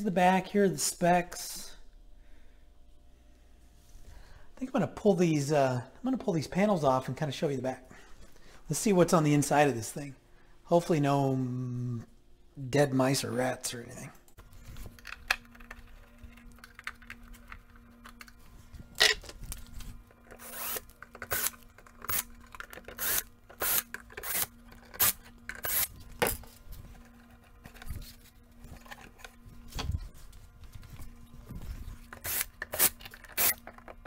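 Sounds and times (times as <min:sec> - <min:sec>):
faint steady hum: 0:00.0 - 0:34.0
screwdriver scraping screws: 0:20.3 - 0:26.0, 0:32.1 - 0:34.0.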